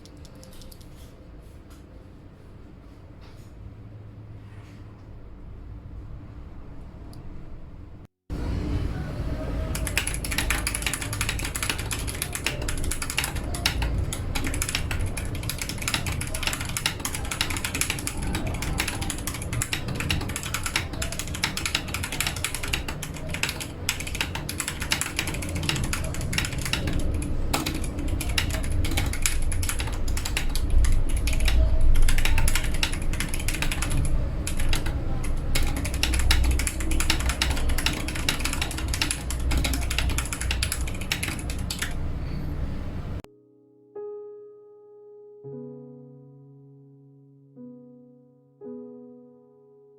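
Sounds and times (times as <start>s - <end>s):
fast mechanical keyboard typing: 0.0s - 1.0s, 9.7s - 42.1s.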